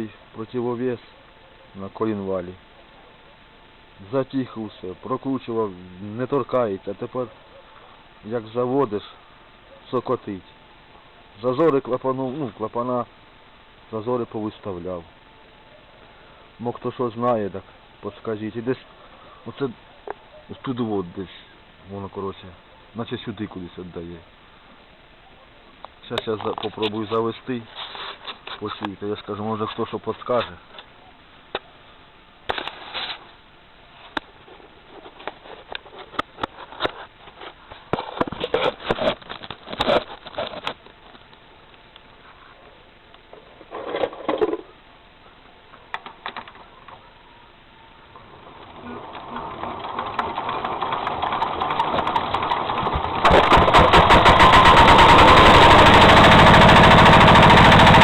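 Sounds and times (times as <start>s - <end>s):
handling clicks and rattles: 49.1s - 58.0s
diesel tractor engine knocking: 53.2s - 58.0s.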